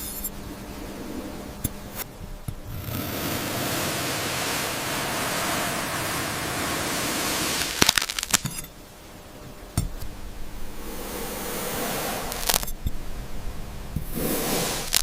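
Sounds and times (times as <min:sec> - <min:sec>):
crackling clicks: 0:01.6 - 0:03.1, 0:07.5 - 0:08.8, 0:12.2 - 0:13.0, 0:14.7 - 0:15.0
knife cutting through foam: 0:12.2 - 0:12.7.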